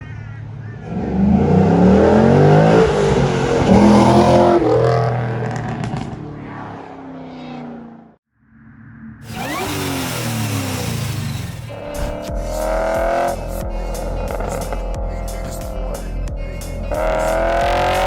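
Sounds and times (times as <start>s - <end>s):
car engine revving hard: 0.8s - 6.2s, 9.2s - 15.6s, 16.9s - 18.0s.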